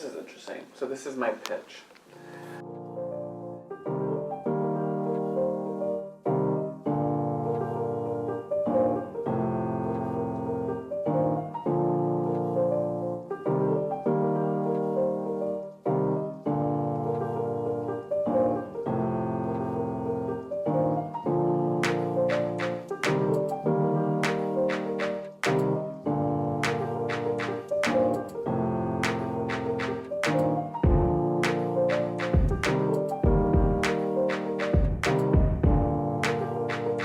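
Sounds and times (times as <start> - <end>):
piano-led instrumental music: 2.1 - 37.0.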